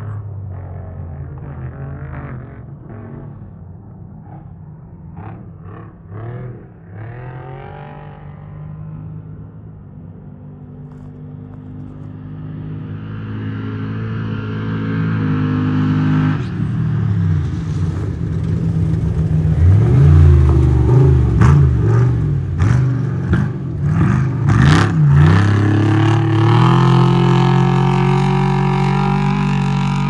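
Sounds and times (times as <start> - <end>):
truck engine revving: 17.5 - 30.0.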